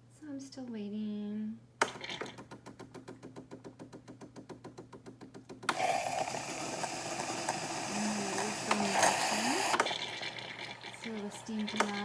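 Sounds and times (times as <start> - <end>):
espresso machine ticking: 5.7 - 12.0
steam hissing through hoses: 5.8 - 12.0.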